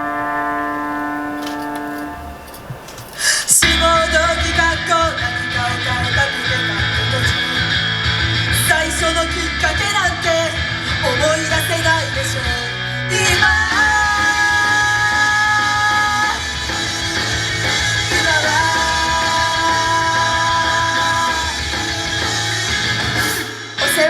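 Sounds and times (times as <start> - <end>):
loud rock music: 3.6 - 24.0.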